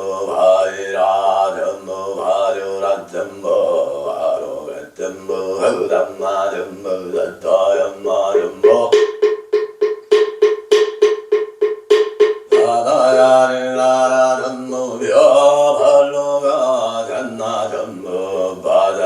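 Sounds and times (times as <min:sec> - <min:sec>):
man chanting long notes: 0:00.0 - 0:09.0, 0:12.6 - 0:19.0
steady held tone: 0:08.4 - 0:13.2.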